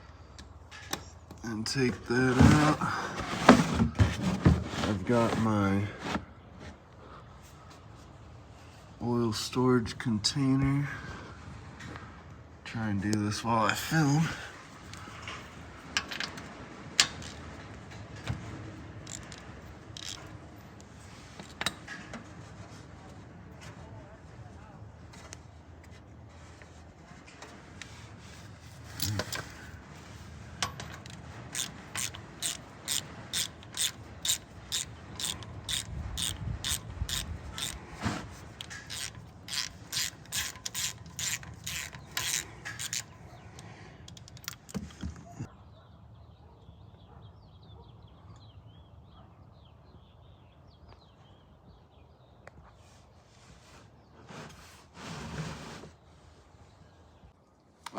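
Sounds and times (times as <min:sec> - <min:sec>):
socket ratchet clicking: 0:31.0 - 0:37.8, 0:38.6 - 0:43.1.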